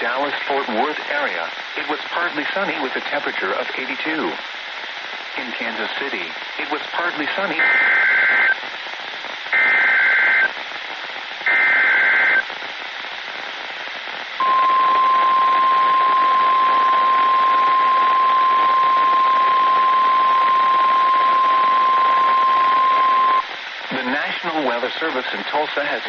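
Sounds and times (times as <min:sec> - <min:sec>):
radio static hiss: 0:00.0 - 0:26.0
steady warning alarm tone: 0:14.4 - 0:23.4.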